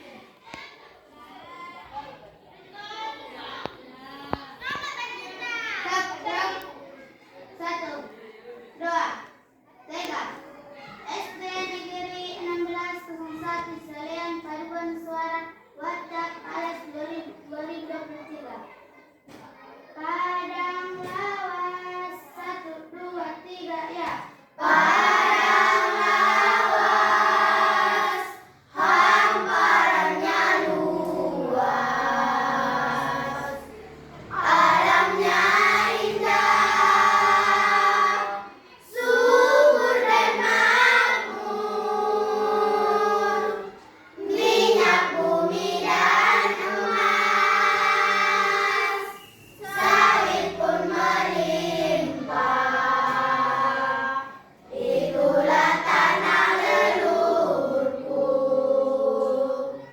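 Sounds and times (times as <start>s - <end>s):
choir singing: 24.6s - 59.9s.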